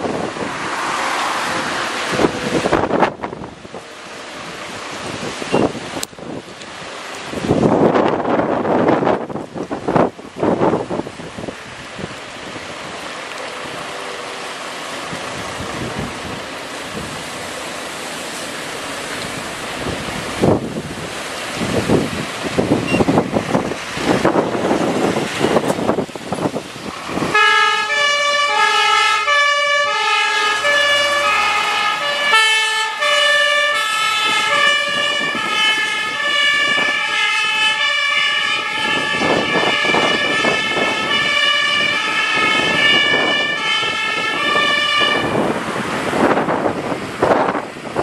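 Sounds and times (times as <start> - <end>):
wind noise on microphone: 0.0 - 13.9, 14.9 - 17.6, 18.6 - 28.6, 29.2 - 48.0
fire engine two-tone horn: 27.2 - 45.6.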